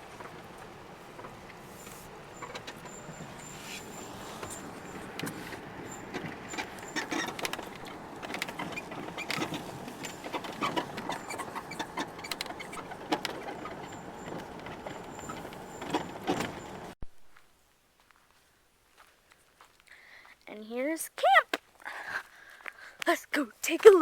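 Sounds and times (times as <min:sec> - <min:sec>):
rattles and knocks: 0:00.0 - 0:17.0
vehicle rumbling on bumpy track: 0:00.0 - 0:17.0.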